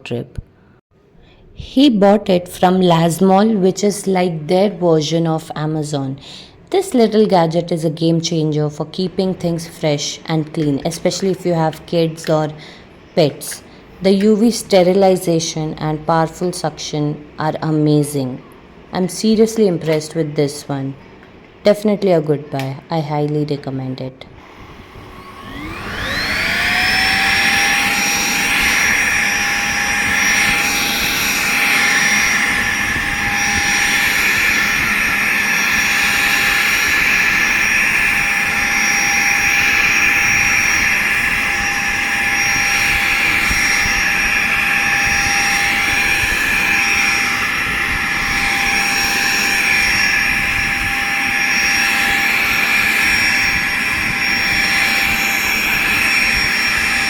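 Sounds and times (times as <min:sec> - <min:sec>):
vacuum cleaner motor whining: 0:24.4 - 0:57.0.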